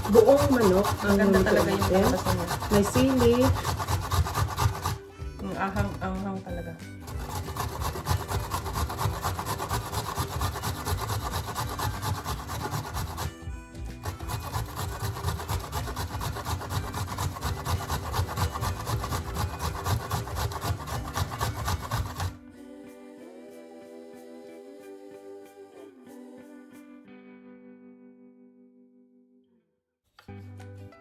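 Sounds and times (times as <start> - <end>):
ginger rasping on metal grater: 0.0 - 6.2, 7.0 - 22.4
faint background music: 0.0 - 28.8.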